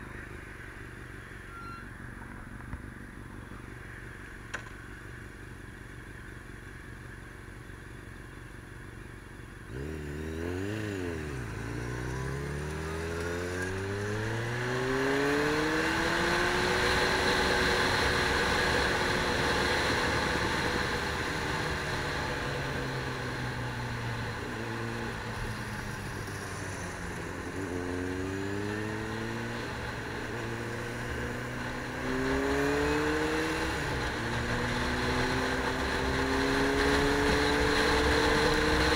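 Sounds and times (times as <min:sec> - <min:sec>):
vehicle engine revving and accelerating: 0:09.6 - 0:38.9.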